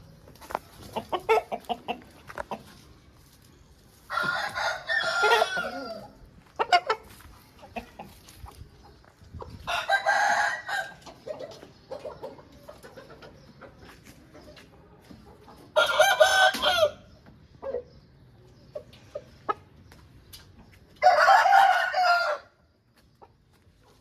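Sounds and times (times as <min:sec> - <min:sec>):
chicken clucks: 0:00.0 - 0:22.2, 0:22.8 - 0:24.0
roosters crowing: 0:04.0 - 0:07.0, 0:09.6 - 0:11.1, 0:15.7 - 0:17.1, 0:21.0 - 0:22.7.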